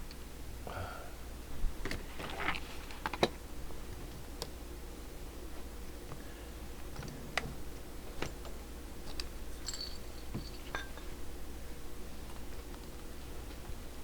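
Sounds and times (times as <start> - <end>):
steady low hum: 0.0 - 14.0
metallic ring: 9.6 - 11.1.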